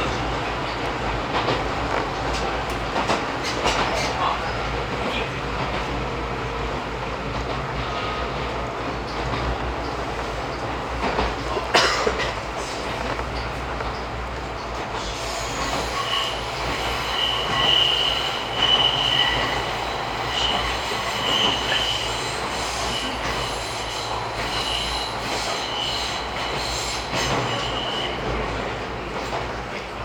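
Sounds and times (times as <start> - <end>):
train running gear rumble: 0.0 - 30.0
train wheels squealing: 14.8 - 29.4.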